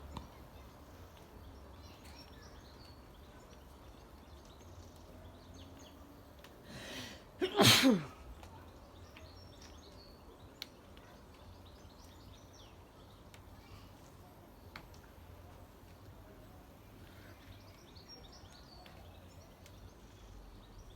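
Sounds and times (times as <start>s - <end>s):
person sneezing: 7.4s - 8.1s.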